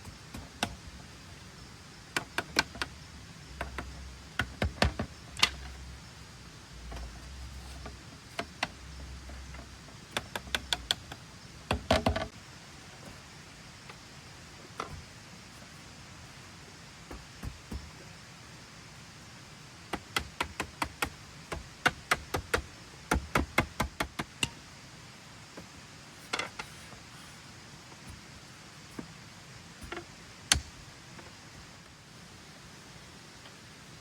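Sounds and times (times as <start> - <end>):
knocks and taps on wood: 10.1 - 12.3, 17.1 - 17.9, 19.9 - 24.6.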